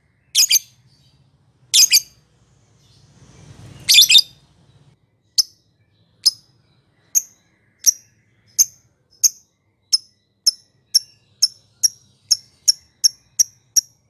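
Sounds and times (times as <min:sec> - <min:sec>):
lovebird chirping: 0:00.2 - 0:14.0.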